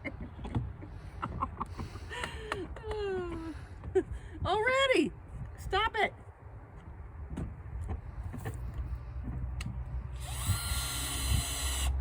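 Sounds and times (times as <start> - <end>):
power drill whine: 10.2 - 12.0.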